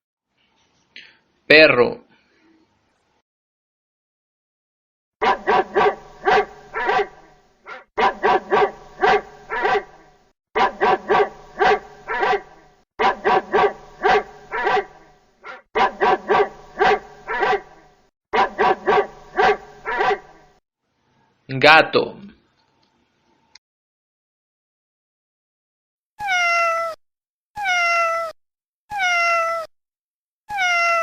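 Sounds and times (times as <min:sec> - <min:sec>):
dog barking: 0:05.2 - 0:20.6.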